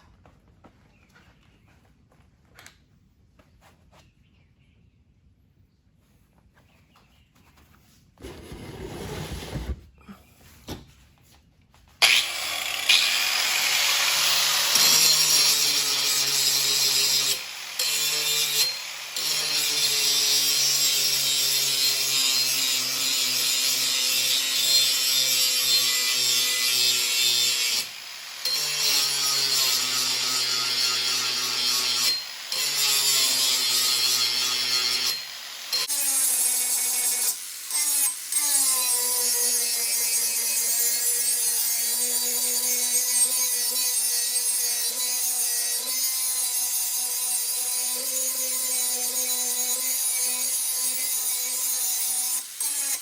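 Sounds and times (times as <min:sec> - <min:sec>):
power grinder grinding steel: 0:12.0 - 0:53.0.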